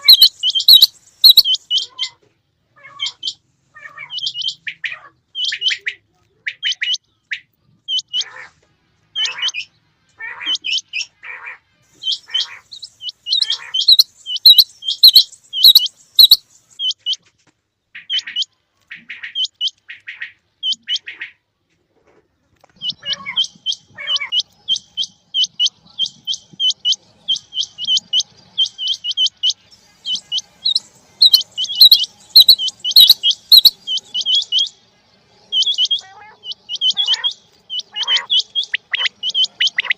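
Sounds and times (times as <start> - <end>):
quail calling: 0.0 - 2.2, 2.8 - 8.6, 9.2 - 17.2, 22.8 - 34.8, 35.5 - 39.9.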